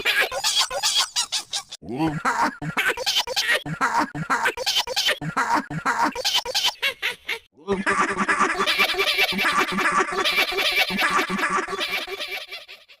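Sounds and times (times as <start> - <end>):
rhythmic giggling: 0.0 - 13.0
processed cartoon voice bursts: 1.8 - 6.4.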